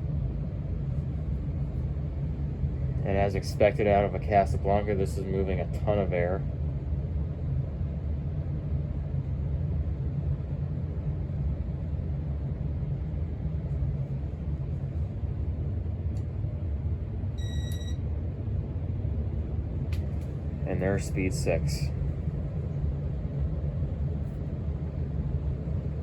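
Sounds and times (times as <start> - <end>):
ceiling fan air rush: 0.0 - 26.0
short electronic beep: 17.4 - 18.0.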